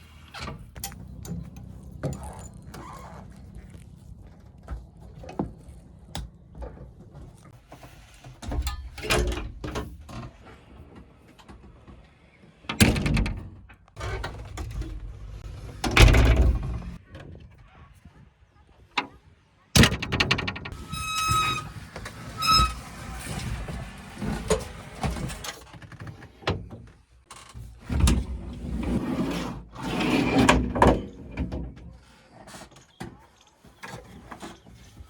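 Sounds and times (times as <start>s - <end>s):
metallic clanks and thuds: 12.8s - 17.0s.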